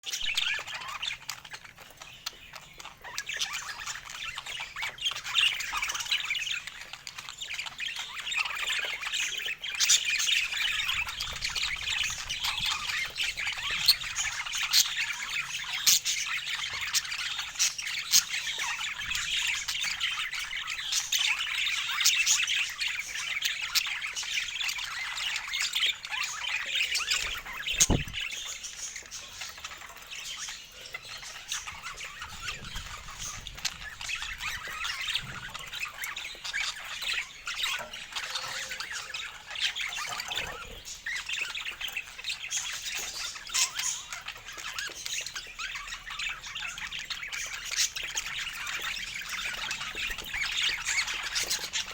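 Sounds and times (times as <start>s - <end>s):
parakeet chattering and squawking: 0.0s - 51.9s
low thump: 27.8s - 28.2s.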